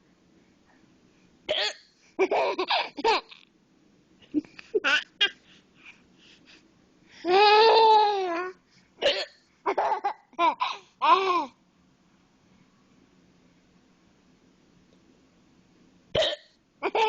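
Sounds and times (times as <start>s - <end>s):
baby laughing: 2.2s - 3.4s, 4.4s - 5.4s, 7.3s - 8.5s, 9.7s - 11.5s.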